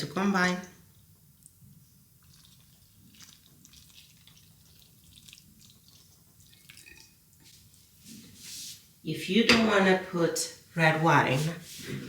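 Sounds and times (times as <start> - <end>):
liquid dripping and splashing: 2.2 - 7.8.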